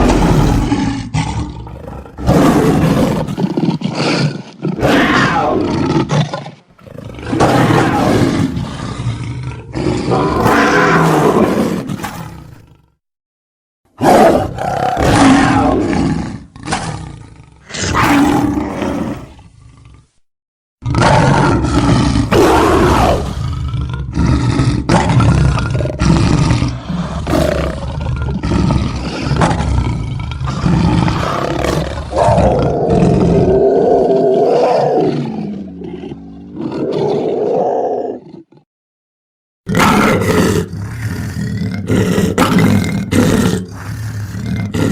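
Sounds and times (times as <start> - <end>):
monster roars and growls: 0.0 - 12.7, 14.0 - 19.8, 20.8 - 38.6, 39.7 - 44.9.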